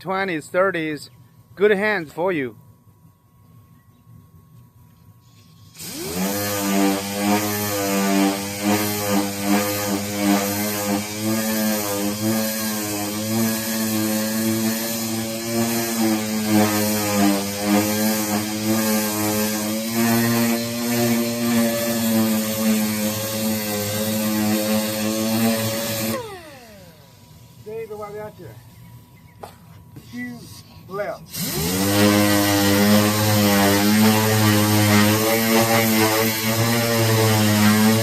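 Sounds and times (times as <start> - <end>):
power tool motor running: 5.4 - 28.1, 31.3 - 38.0.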